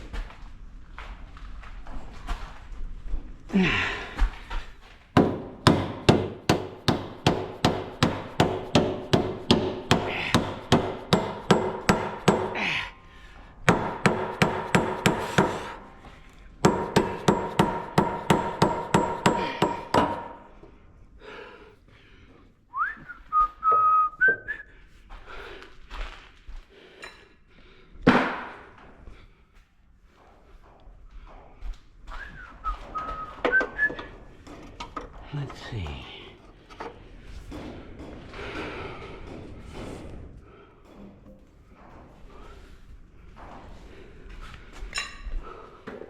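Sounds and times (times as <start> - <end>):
hammer striking metal: 5.2 - 12.8, 13.7 - 20.5
high whistle-like tone: 22.8 - 24.7, 32.2 - 34.1.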